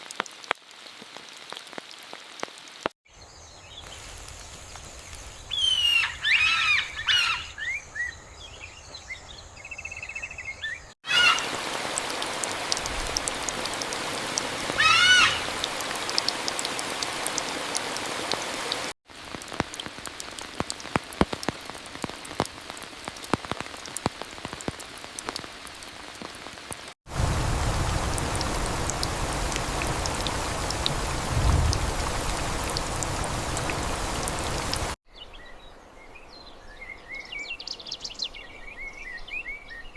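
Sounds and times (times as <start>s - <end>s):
water drips: 0.0s - 2.9s, 11.0s - 35.0s
rain falling: 0.0s - 3.0s, 3.8s - 6.4s, 11.0s - 35.0s
short bird calls: 14.8s - 15.6s.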